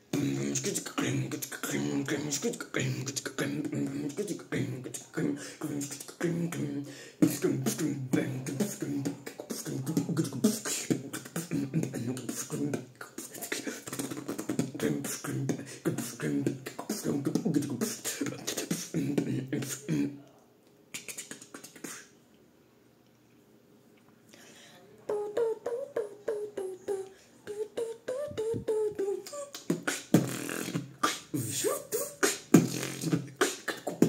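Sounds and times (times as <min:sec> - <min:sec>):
person beatboxing: 0:00.0 - 0:20.3, 0:21.0 - 0:22.1, 0:25.1 - 0:34.0.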